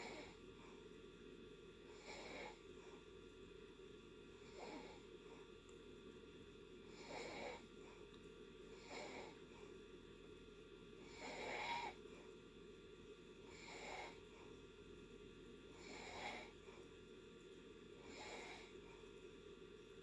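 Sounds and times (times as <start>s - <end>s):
low background hiss: 0.0s - 20.0s
person snoring softly: 1.9s - 2.7s, 4.4s - 5.2s, 6.8s - 8.0s, 8.7s - 9.7s, 11.0s - 12.0s, 13.4s - 14.6s, 15.7s - 16.8s, 18.0s - 19.1s.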